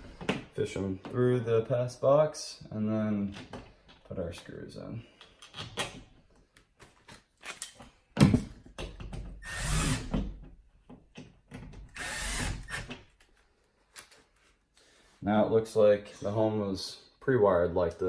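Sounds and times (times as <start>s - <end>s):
power drill driving screws: 9.4s - 10.1s, 11.9s - 13.0s.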